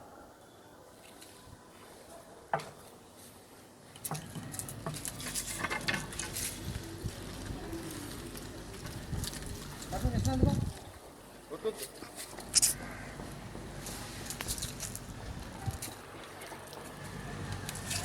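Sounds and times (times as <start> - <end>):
leaves rustling: 2.8 - 18.0
branches cracking and snapping: 4.0 - 10.9.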